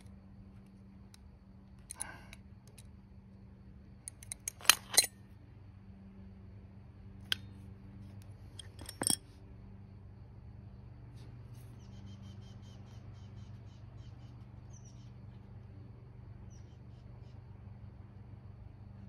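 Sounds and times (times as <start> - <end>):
steady low hum: 0.0 - 19.0
metallic clicks of hand tools: 1.8 - 2.9, 4.1 - 5.1, 8.6 - 9.2.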